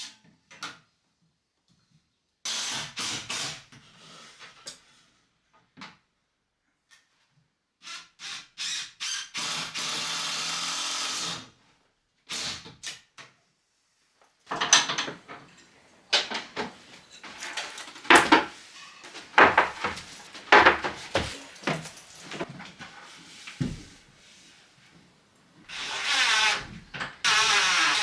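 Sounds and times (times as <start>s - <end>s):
sharp knocks and clattering: 14.5s - 28.0s
power drill running: 25.7s - 28.0s.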